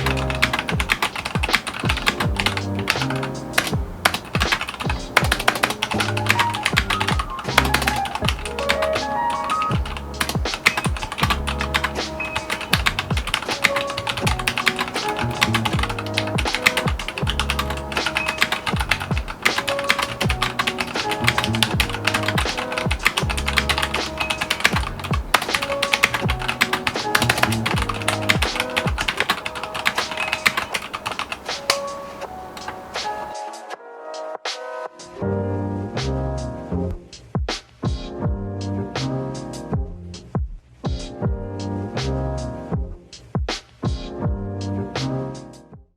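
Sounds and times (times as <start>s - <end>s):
background music with bass: 0.0s - 29.2s, 35.0s - 45.9s
mechanical keyboard typing: 0.0s - 33.3s.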